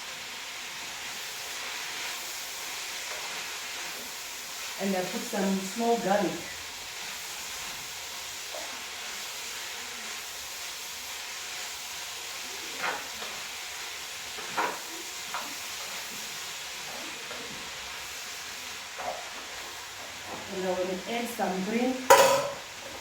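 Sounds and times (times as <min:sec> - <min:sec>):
food sizzling in a pot: 0:00.0 - 0:23.0
utensil knocking against pot: 0:22.1 - 0:22.6.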